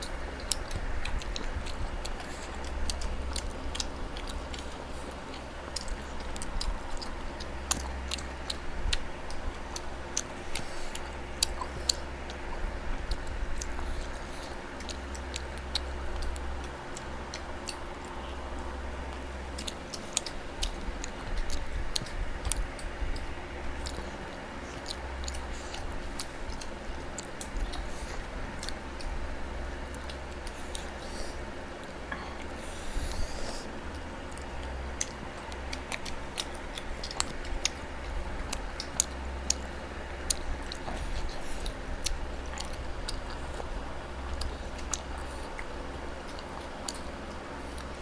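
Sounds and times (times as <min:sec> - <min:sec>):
close chewing: 0:00.0 - 0:48.0.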